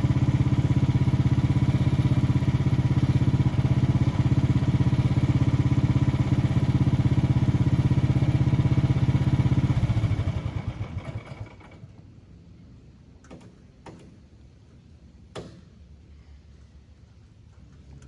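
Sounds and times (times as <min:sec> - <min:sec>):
small gasoline engine running: 0:00.0 - 0:11.9.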